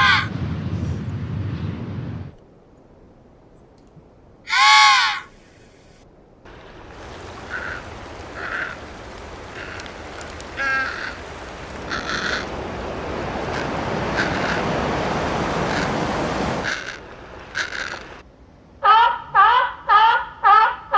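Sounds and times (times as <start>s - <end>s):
ocean surf: 0.0s - 0.4s, 6.4s - 18.3s
short bird calls: 4.5s - 5.5s.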